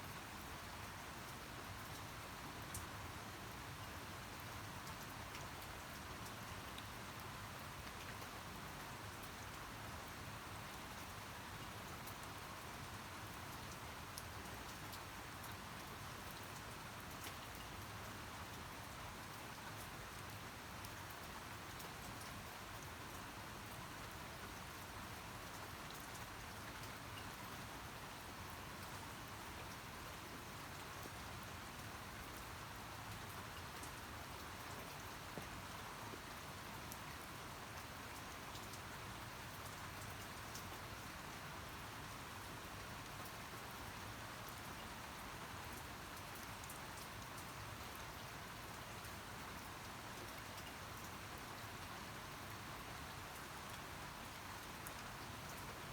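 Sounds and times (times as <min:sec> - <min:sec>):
steady rain patter: 0:00.0 - 0:55.9.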